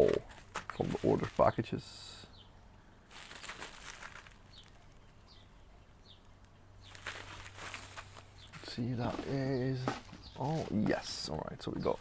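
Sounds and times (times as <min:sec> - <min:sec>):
faint bird chirps: 0:00.7 - 0:03.4, 0:04.4 - 0:07.3
rustling: 0:03.1 - 0:05.1, 0:06.8 - 0:11.3.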